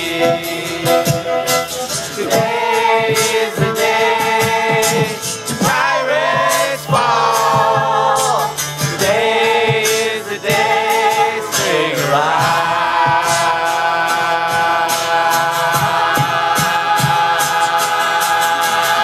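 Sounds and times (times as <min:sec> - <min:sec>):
group of voices singing: 0:00.0 - 0:19.0.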